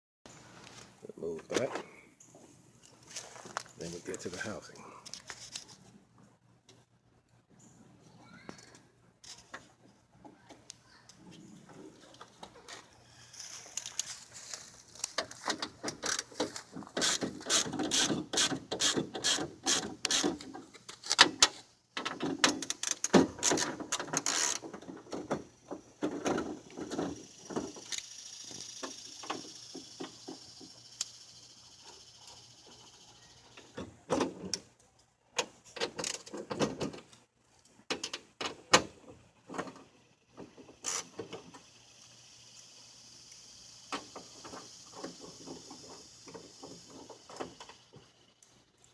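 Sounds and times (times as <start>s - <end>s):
tools clicking and rattling on car door: 15.2s - 27.9s, 35.4s - 37.1s.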